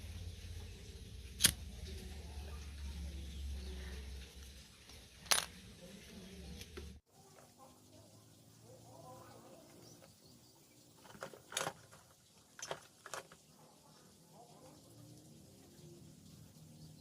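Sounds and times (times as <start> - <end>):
sharp metallic clicks: 1.4 - 1.8.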